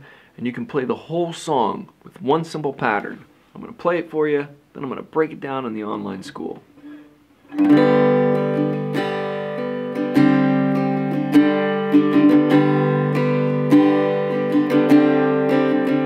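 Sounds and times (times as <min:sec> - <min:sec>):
acoustic guitar strumming: 0:06.8 - 0:16.0.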